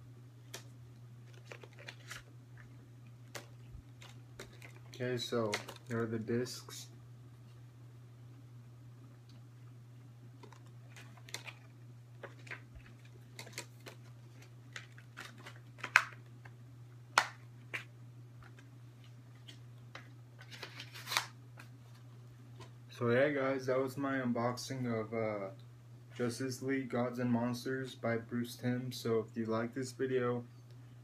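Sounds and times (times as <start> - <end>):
steady low hum: 0.0 - 31.0
plastic disc case clicking: 3.3 - 6.0, 12.2 - 14.0, 14.7 - 16.2.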